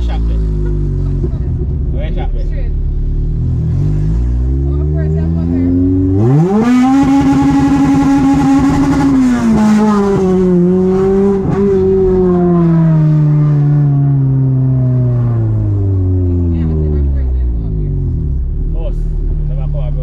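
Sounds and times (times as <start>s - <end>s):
car engine revving hard: 3.1s - 17.0s.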